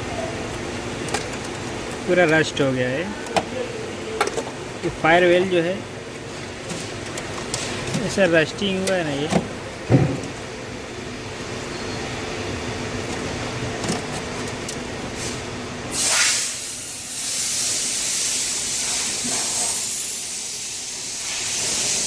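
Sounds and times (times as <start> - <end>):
spray or air jet hissing: 15.2 - 22.0.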